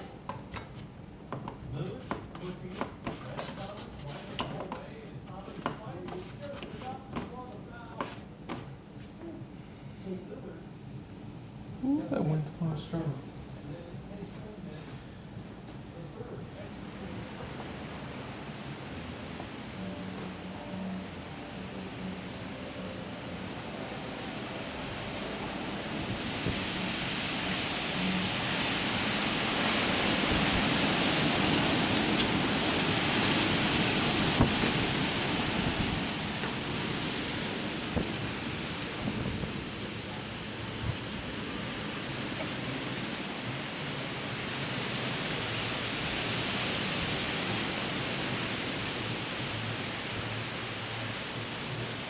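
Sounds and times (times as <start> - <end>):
heavy rain: 16.3 - 52.0
strong wind: 20.5 - 52.0.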